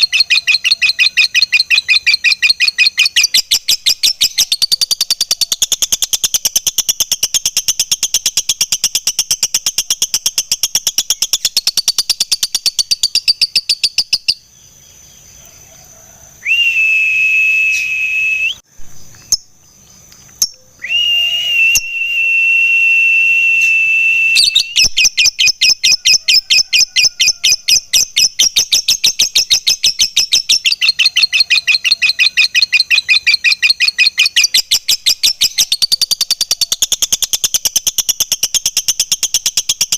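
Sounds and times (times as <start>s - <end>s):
bird high whistle tones: 0.0s - 5.5s, 16.4s - 18.6s, 20.5s - 36.7s
bird shrill rapid chatter: 0.0s - 13.9s, 24.4s - 39.9s.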